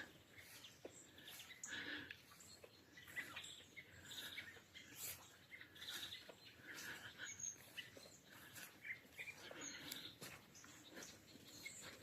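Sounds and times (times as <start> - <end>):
small birds chirping and trilling: 0.0 - 12.0.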